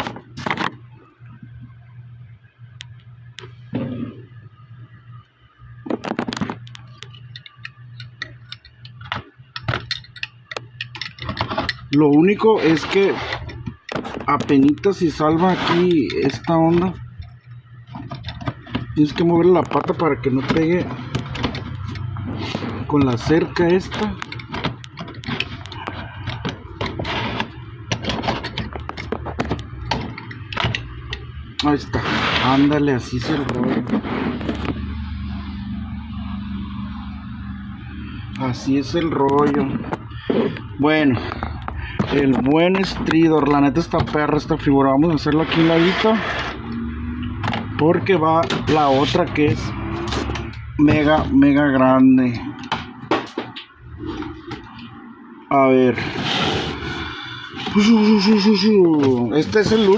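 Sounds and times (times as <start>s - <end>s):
steady low hum: 0.0s - 59.9s
plastic toy parts clicking: 6.2s - 12.0s.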